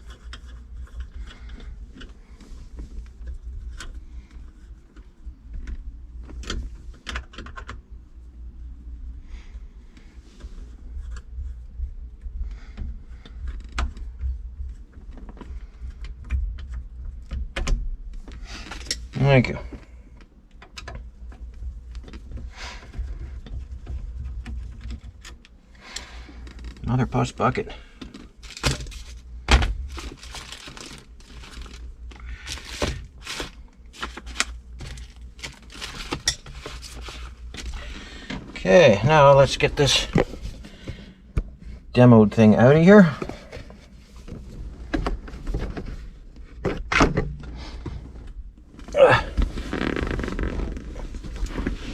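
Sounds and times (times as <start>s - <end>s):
hands rustling and scraping parts: 0.0s - 7.9s, 18.1s - 41.9s.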